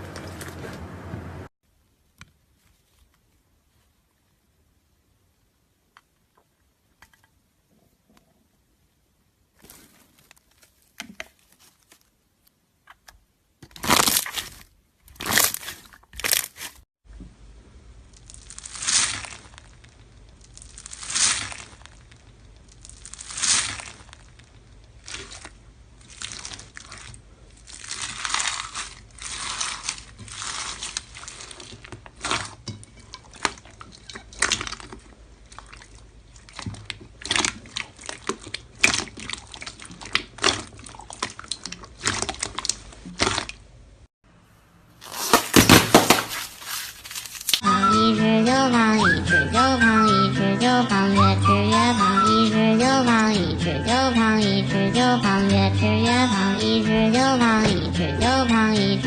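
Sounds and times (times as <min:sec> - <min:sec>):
slime squelching and crackling: 0:09.5 - 0:12.5, 0:13.7 - 0:16.9, 0:18.0 - 0:43.7, 0:45.0 - 0:47.6.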